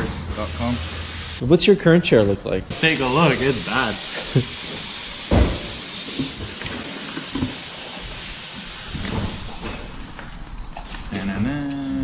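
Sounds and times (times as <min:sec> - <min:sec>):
steady hiss: 0:00.0 - 0:01.4, 0:02.7 - 0:10.4.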